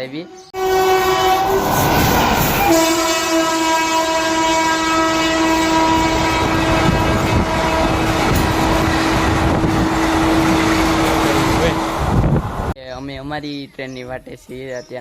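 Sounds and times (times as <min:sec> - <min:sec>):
locomotive horn blast: 0:00.2 - 0:12.1
train rumbling on rails: 0:00.6 - 0:12.8.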